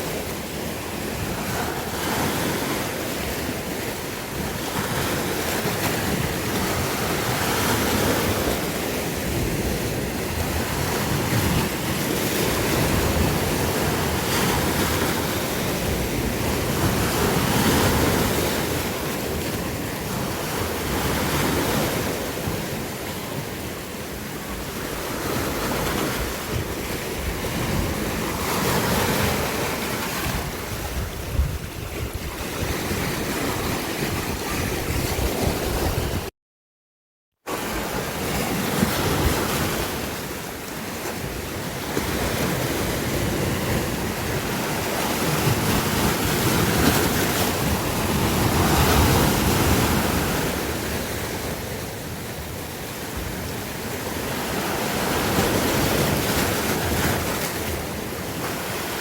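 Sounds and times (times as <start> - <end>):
sea waves breaking: 0.0 - 36.3, 37.5 - 59.0
wind buffeting microphone: 26.5 - 36.3.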